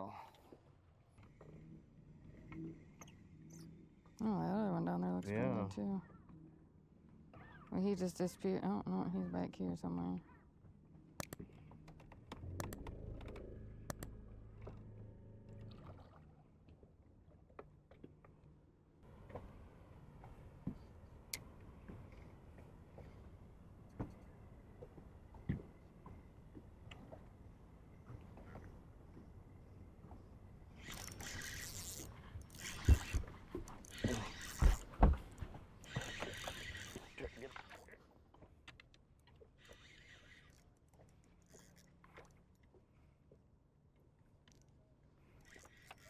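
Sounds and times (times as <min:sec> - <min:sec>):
sharp clicks: 0:11.2 - 0:11.4, 0:12.6 - 0:14.1
small electric motor humming: 0:30.8 - 0:37.6.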